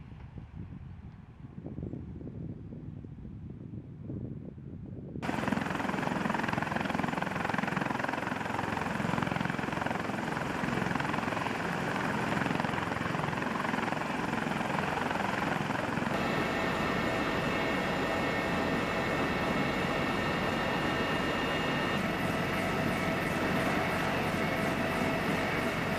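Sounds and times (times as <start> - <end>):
helicopter rotor and engine: 5.2 - 25.9
high whine: 16.0 - 25.9.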